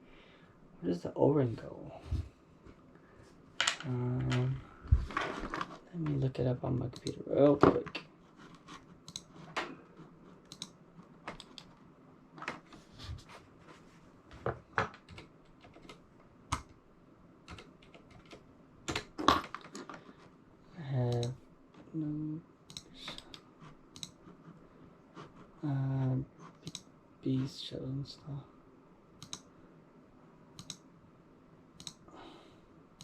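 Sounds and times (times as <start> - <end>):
typing on a keyboard: 11.3 - 11.7, 15.0 - 16.7, 17.5 - 19.8.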